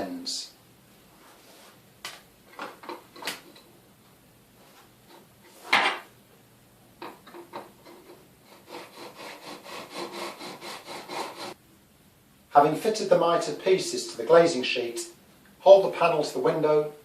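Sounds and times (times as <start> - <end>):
fine-tooth saw cutting plastic: 8.5 - 11.6.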